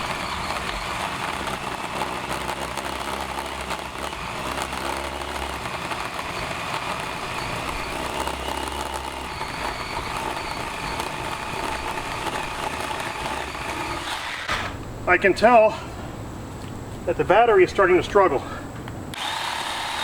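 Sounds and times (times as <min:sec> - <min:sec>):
chainsaw cutting wood: 0:00.0 - 0:14.8, 0:19.1 - 0:20.0.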